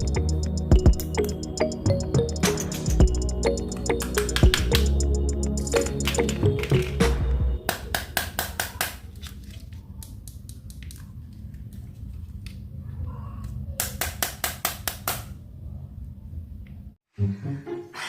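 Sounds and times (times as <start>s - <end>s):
rapid clicks: 2.3s - 7.1s.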